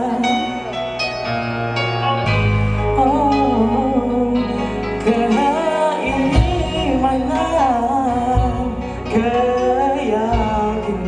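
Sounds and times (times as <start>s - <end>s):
sustained instrumental chords: 0.0s - 11.0s.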